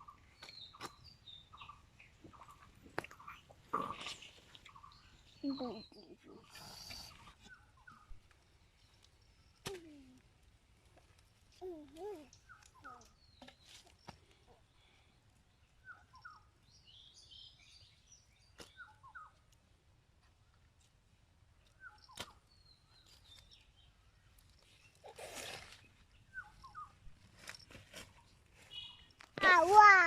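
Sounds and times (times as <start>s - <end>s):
birds chirping: 0.0s - 9.6s, 21.7s - 30.0s.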